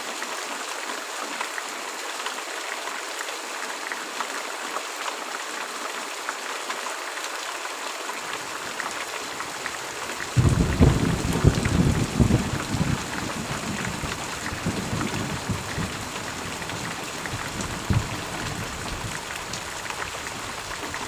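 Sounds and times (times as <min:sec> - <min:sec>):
steady rain: 0:00.0 - 0:21.0
thunder rumble: 0:10.4 - 0:19.2.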